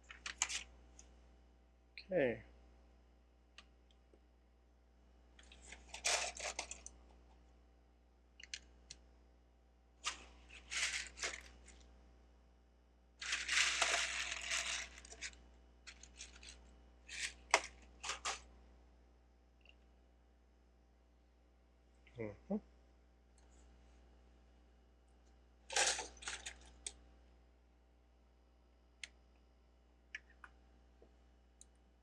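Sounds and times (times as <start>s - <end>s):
plastic bricks clattering: 10.1s - 11.4s, 13.2s - 15.3s, 25.7s - 26.6s.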